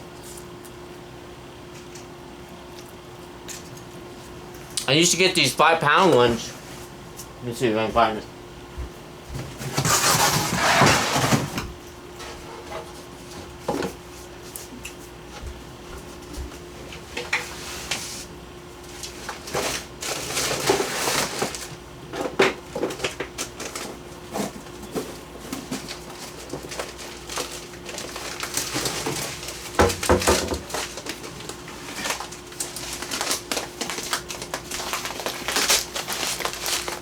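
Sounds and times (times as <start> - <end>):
plastic bag rustling: 9.6 - 11.7, 18.8 - 21.8, 22.7 - 37.0.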